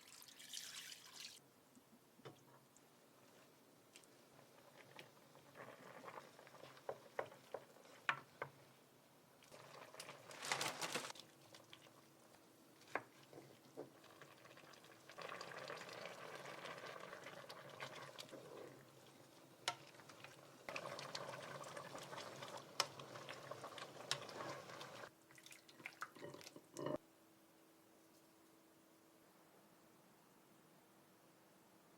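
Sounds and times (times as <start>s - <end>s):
liquid pouring: 0.0s - 1.4s
liquid bubbling in a pot: 2.2s - 10.4s, 11.1s - 27.0s.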